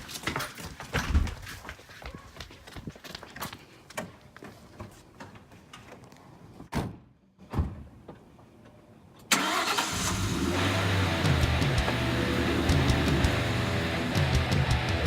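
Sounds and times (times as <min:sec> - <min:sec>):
car engine starting and running: 0:09.3 - 0:15.0.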